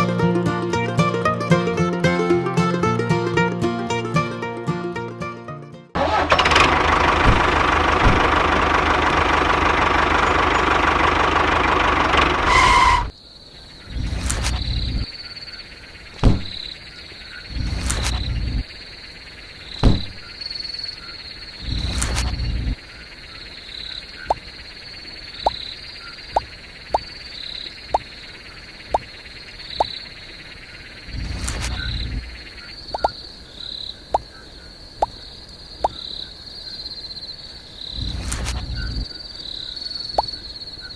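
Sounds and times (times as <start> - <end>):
sharp knocks: 16.2 - 16.6.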